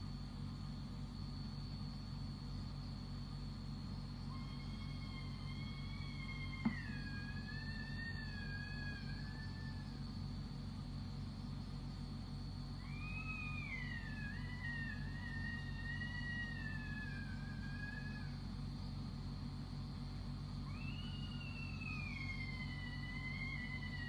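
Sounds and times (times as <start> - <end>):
high-pitched wavering wails: 4.4 - 10.0, 12.8 - 18.4, 20.7 - 24.0.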